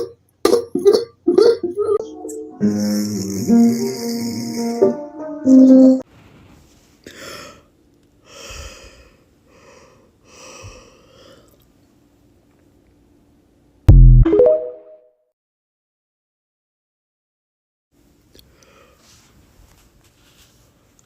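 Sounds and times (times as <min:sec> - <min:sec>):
loud musical note: 0:02.0 - 0:06.0
person breathing or gasping: 0:07.0 - 0:11.5.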